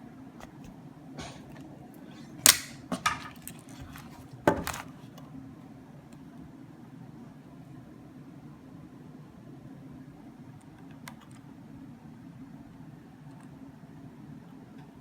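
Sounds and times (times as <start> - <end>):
hard objects knocking: 2.5 - 4.8.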